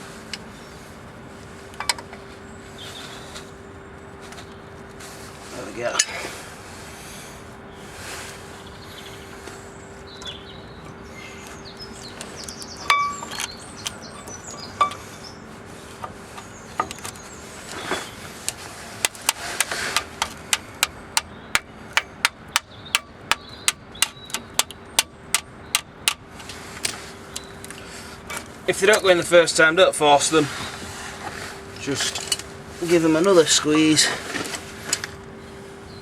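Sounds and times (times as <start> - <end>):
faint steady hum: 0.0 - 36.0
ringing metal clink: 12.9 - 13.4
metal knocks and clicks: 20.2 - 26.2.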